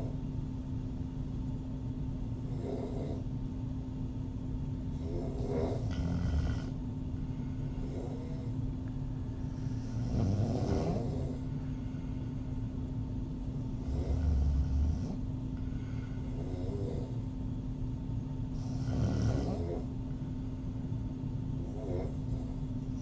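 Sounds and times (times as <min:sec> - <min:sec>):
steady low hum: 0:00.0 - 0:23.0
woman snoring: 0:02.5 - 0:03.2, 0:04.9 - 0:06.8, 0:09.5 - 0:11.6, 0:13.8 - 0:17.2, 0:18.5 - 0:19.9, 0:21.6 - 0:22.6.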